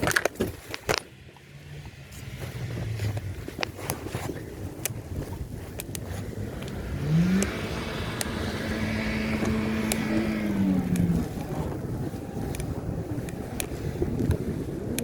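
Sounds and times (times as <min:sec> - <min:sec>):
tyre noise: 0:00.0 - 0:15.0
vehicle engine passing: 0:01.0 - 0:14.8
sharp ticks: 0:04.7 - 0:11.4.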